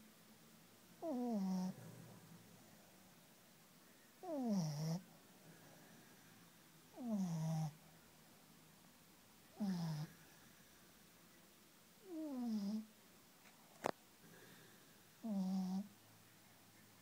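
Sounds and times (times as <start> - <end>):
dog snoring: 1.0 - 2.0, 4.2 - 5.0, 6.9 - 7.8, 9.6 - 10.2, 12.0 - 12.9, 15.2 - 15.9.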